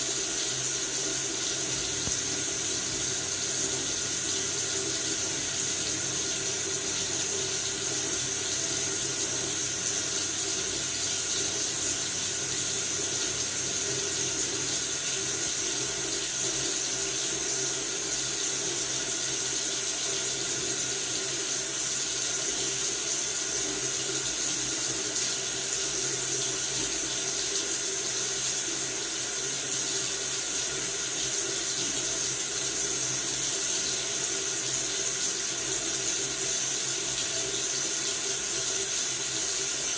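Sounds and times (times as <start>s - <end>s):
tap water running into sink: 0.0s - 39.9s.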